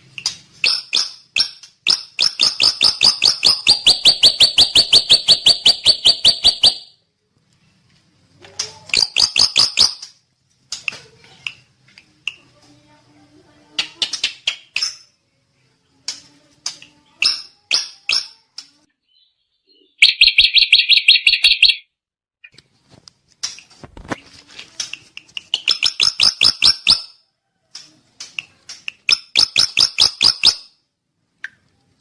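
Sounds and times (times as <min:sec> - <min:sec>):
bird singing rapid high notes: 0:00.6 - 0:07.0, 0:19.0 - 0:21.9.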